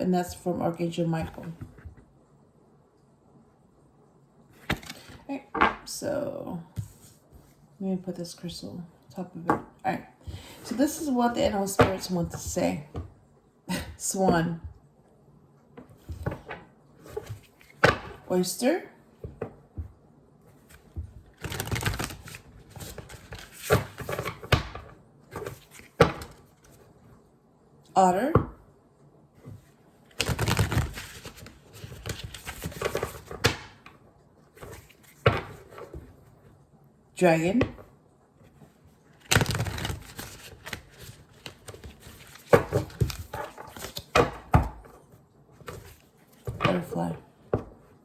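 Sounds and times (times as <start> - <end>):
cards being shuffled: 4.6 - 5.2, 20.7 - 24.5, 30.1 - 33.7, 39.2 - 44.4.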